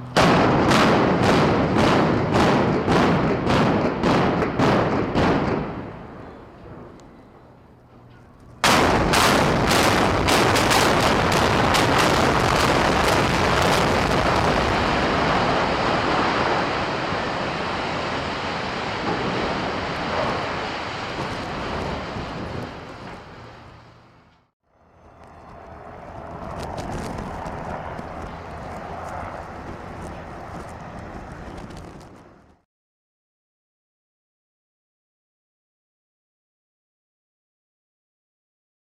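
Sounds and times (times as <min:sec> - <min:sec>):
building collapsing rumble: 0:08.6 - 0:23.6, 0:25.4 - 0:32.6.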